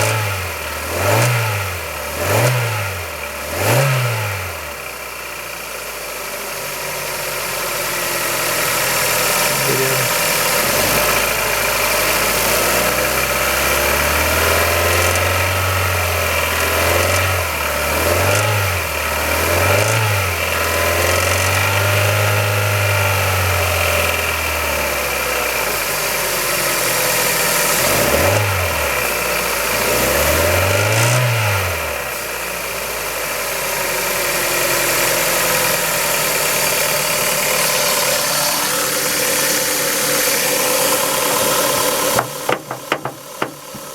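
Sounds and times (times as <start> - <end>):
car engine idling and revving: 0.0 - 43.9
engine rattle: 4.8 - 22.4, 32.3 - 43.9.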